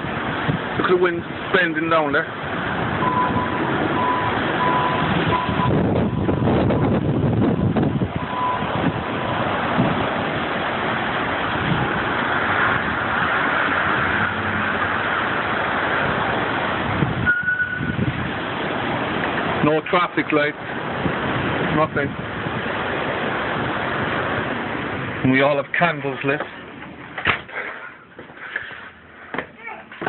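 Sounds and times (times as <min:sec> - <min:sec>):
wind gusting against microphone: 0:00.0 - 0:27.5
short high beeps: 0:03.0 - 0:06.2, 0:08.2 - 0:08.7, 0:17.3 - 0:18.0.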